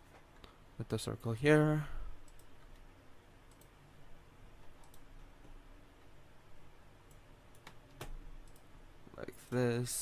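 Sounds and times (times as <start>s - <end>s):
faint room noise: 0.0s - 10.0s
computer mouse clicks: 2.2s - 3.8s, 4.6s - 5.6s, 7.0s - 8.7s.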